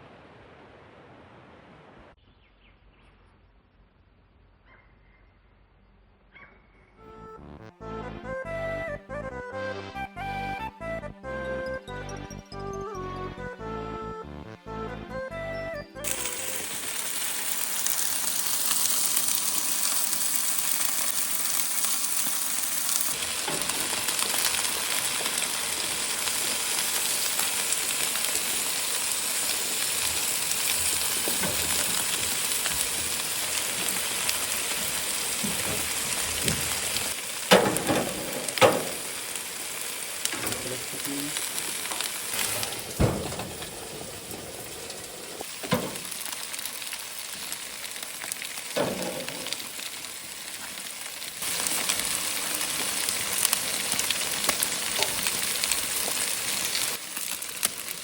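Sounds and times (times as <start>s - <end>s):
food sizzling on a grill: 15.5s - 58.0s.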